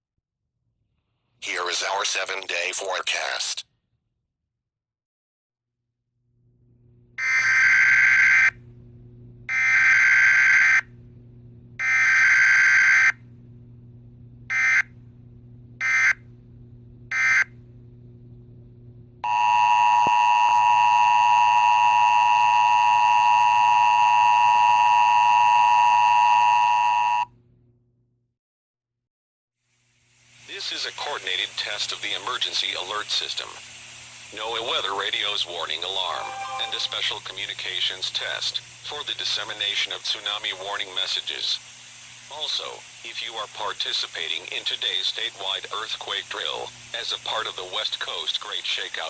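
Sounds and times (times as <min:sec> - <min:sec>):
two-tone attention signal: 0:36.0 - 0:37.1.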